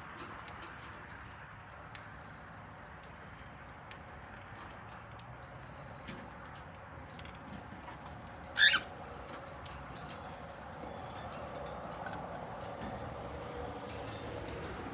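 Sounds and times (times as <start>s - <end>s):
cockatiel high call: 8.6s - 8.9s.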